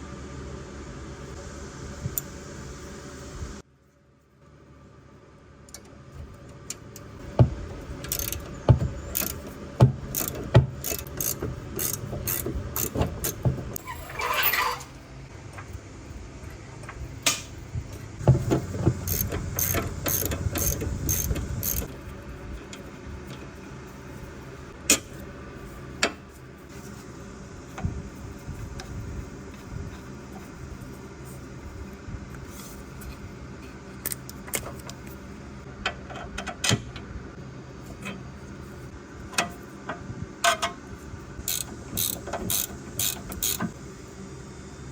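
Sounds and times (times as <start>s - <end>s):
ratchet wrench clicking: 8.0s - 13.5s, 19.0s - 21.9s, 41.4s - 43.8s.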